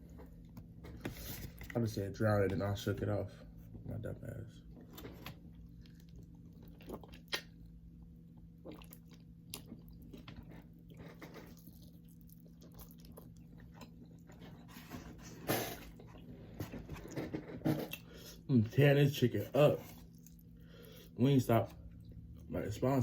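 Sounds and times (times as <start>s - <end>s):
faint low hum: 0.0s - 23.0s
chewing and crunching: 4.6s - 18.4s, 19.4s - 22.8s.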